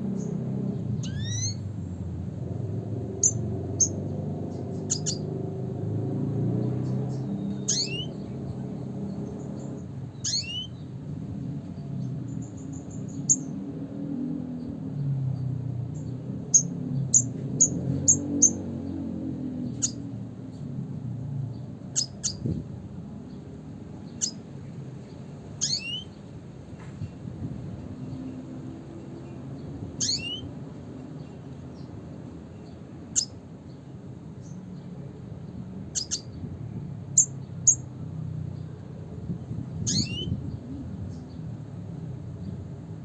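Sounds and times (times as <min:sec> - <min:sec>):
bird calls: 0:00.0 - 0:02.0, 0:03.0 - 0:05.4, 0:06.6 - 0:10.9, 0:19.6 - 0:20.1, 0:21.5 - 0:22.6, 0:24.0 - 0:26.2, 0:29.2 - 0:33.8, 0:35.8 - 0:36.5, 0:39.8 - 0:41.5
steady low rumble: 0:00.0 - 0:30.0.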